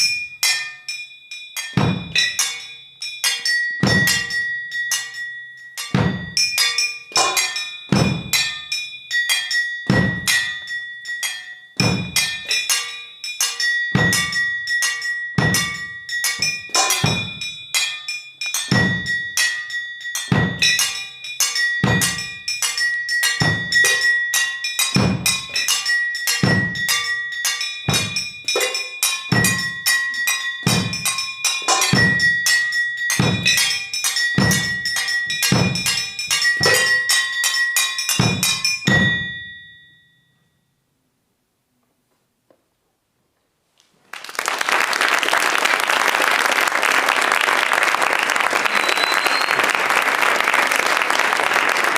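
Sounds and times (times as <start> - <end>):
metal strikes with ringing tones: 0.0 - 40.7.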